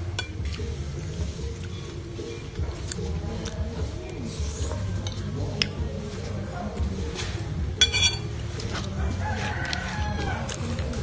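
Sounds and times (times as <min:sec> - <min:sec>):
background music with low beat: 0:00.0 - 0:11.0
short ringing clink: 0:07.8 - 0:08.3.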